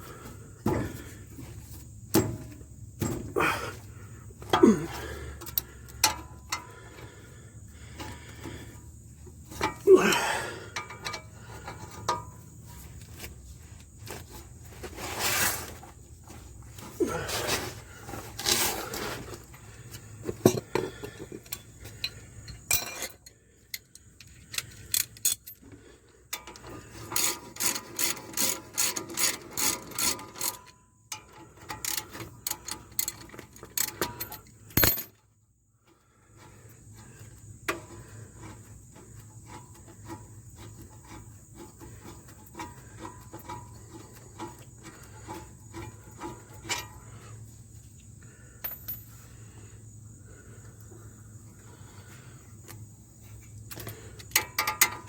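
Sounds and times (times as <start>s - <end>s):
metal clinks and knocks: 0.6s - 3.6s, 4.4s - 7.2s, 8.0s - 14.4s, 18.1s - 35.4s, 36.9s - 47.5s, 48.4s - 49.4s, 52.6s - 55.0s
ratchet clicking: 26.3s - 34.9s.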